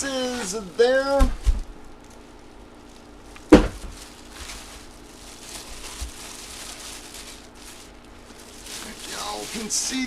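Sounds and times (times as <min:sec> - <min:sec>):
handling and rustling: 0:00.1 - 0:10.0.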